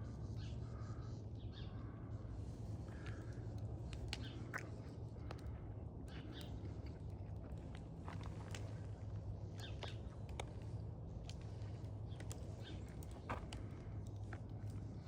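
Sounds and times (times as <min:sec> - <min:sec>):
steady low hum: 0:00.0 - 0:15.0
crows cawing faintly: 0:00.4 - 0:03.6.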